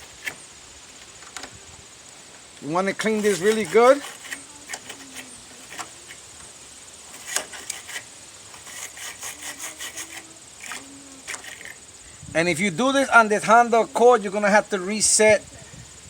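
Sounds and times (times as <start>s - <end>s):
brush scraping battery terminal: 2.6s - 11.8s.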